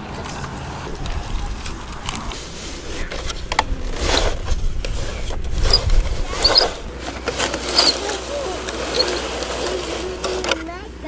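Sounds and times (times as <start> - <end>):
wind rumble on microphone: 0.0 - 7.0
plastic parts clicking: 0.2 - 10.7
toy digger scraping sand: 1.0 - 10.9.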